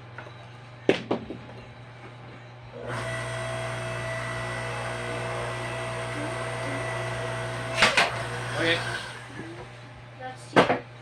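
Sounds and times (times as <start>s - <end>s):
log splitter motor whining: 2.8s - 10.0s.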